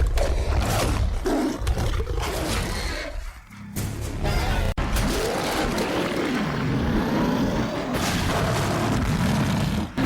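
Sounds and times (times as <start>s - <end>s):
film soundtrack music: 0.1s - 6.6s.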